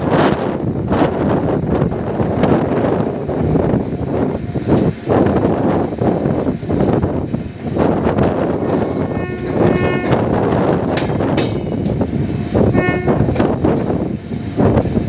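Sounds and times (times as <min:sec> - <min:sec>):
train rumble and rattle: 0:00.0 - 0:15.0
train horn: 0:08.8 - 0:10.8, 0:12.4 - 0:13.6.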